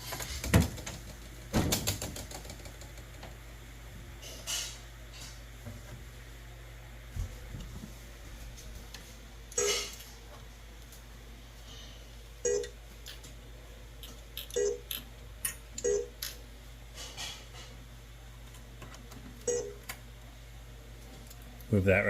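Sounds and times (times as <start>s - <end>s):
pinball machine short beeps: 9.6s - 9.9s, 12.4s - 12.7s, 14.6s - 14.8s, 15.8s - 16.1s, 19.5s - 19.8s.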